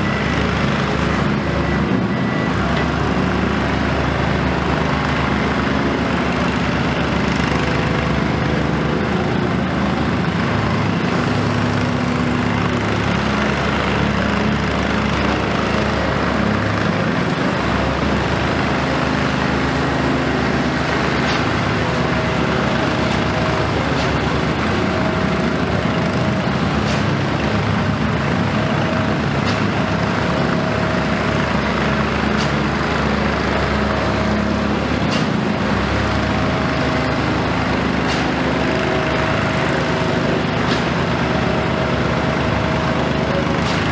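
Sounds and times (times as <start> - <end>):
excavator diesel engine running: 0.0 - 43.9.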